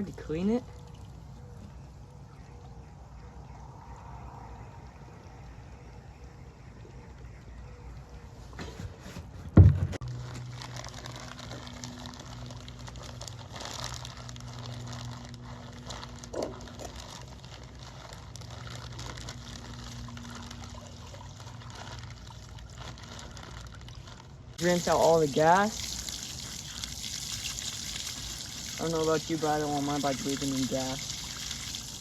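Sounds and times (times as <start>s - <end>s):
gasoline sloshing and dribbling: 0.0s - 3.1s, 5.0s - 32.0s
knock: 9.6s - 10.0s.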